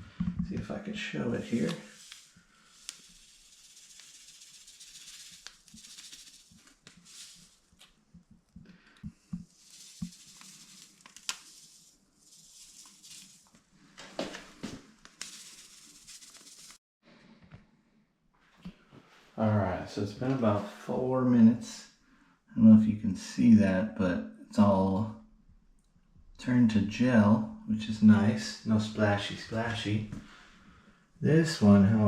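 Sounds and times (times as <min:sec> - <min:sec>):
granules trickling into water: 0:09.5 - 0:13.6.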